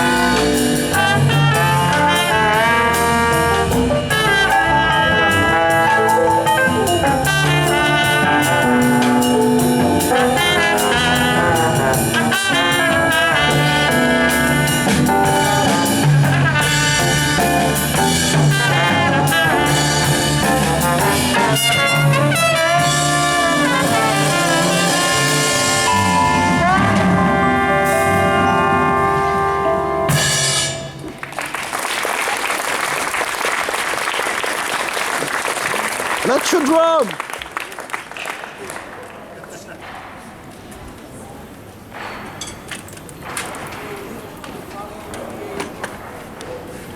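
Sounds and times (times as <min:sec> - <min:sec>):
live jazz band with brass: 0:00.0 - 0:37.4.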